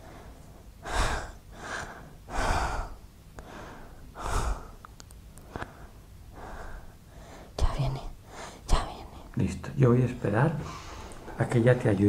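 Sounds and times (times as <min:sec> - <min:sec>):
woman breathing heavily: 0:00.0 - 0:08.7, 0:10.6 - 0:11.4
faint clicks: 0:04.8 - 0:05.8.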